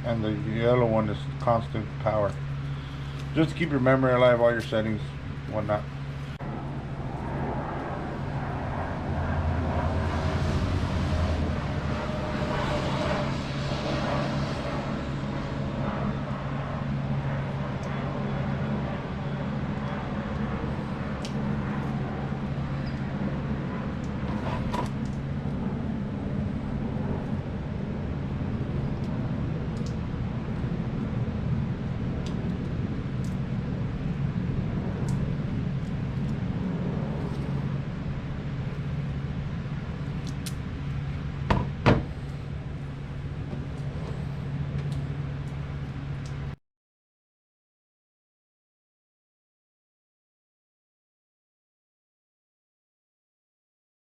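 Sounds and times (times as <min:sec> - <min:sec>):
low hum: 0:00.0 - 0:46.6.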